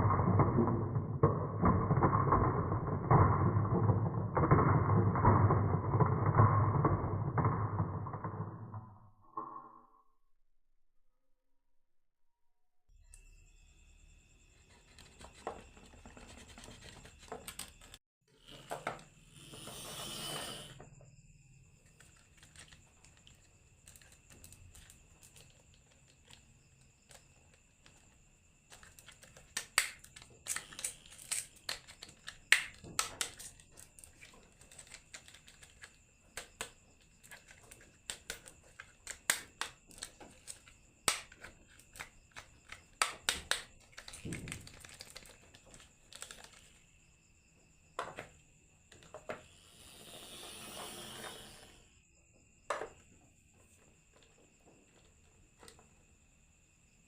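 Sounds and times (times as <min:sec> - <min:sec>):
marbles clicking down wooden run: 0:00.0 - 0:09.6.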